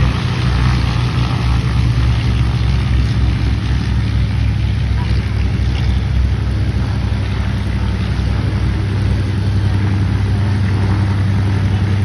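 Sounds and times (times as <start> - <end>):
aircraft engine drone: 0.0 - 12.0.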